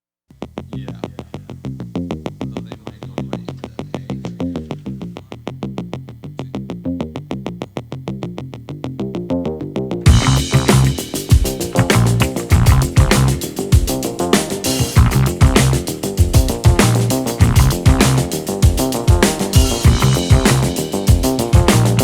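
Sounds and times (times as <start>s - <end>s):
electronic synthesizer music: 10.1s - 22.0s.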